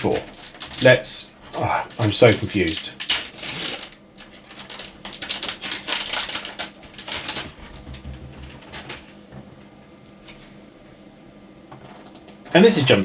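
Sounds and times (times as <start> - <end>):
foil pack tearing and crinkling: 0.0 - 9.1.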